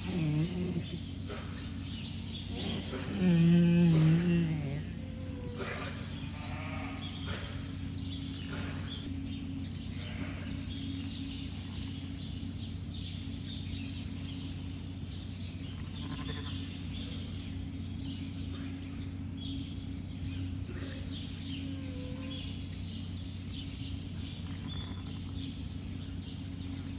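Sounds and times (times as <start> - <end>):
low steady hum: 0.0 - 26.9
sheep and lambs bleating: 2.5 - 7.5, 10.0 - 10.7, 15.6 - 16.8, 24.4 - 25.4.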